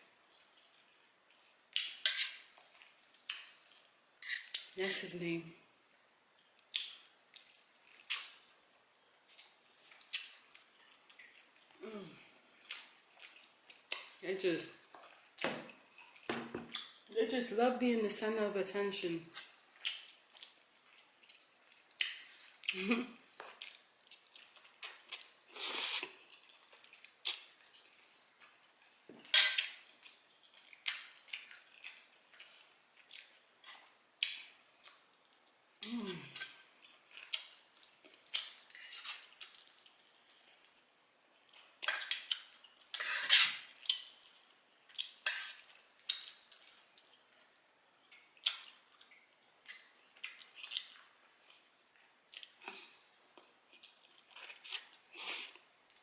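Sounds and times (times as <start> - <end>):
mouth eating sounds: 52.3 - 56.0.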